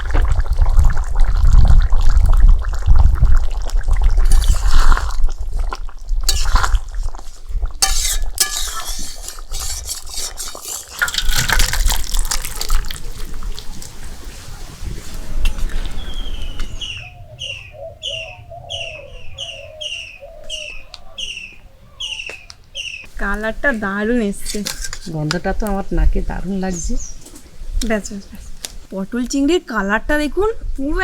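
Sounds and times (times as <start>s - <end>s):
curry bubbling and splattering: 0.0s - 14.3s
spoon clinking against pan: 7.8s - 11.4s.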